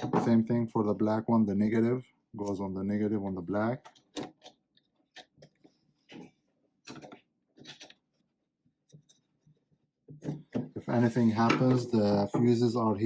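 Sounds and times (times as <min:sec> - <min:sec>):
small clicks and knocks: 0:03.8 - 0:08.2.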